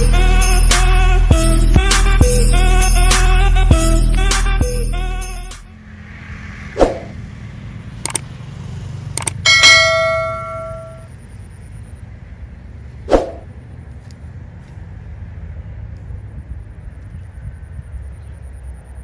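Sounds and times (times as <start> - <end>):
loud metallic clang ringing: 9.5 - 11.1.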